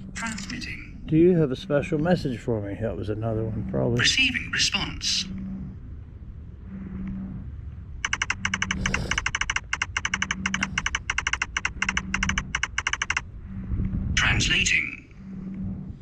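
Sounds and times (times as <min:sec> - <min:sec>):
low pulsing hum: 0:00.0 - 0:16.0
rapid electronic clicking chatter: 0:08.0 - 0:13.3.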